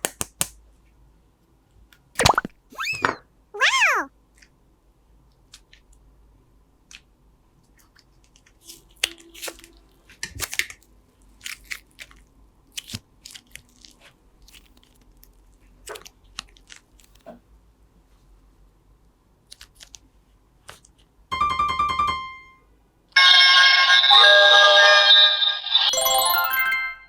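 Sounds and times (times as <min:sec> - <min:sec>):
slime crackling and squishing: 0:10.4 - 0:17.2.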